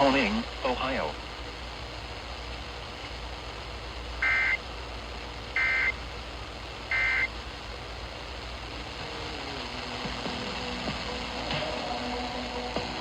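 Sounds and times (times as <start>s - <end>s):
steady hiss: 0.0s - 13.0s
digital data tone bursts: 4.2s - 4.6s, 5.6s - 6.0s, 6.9s - 7.4s.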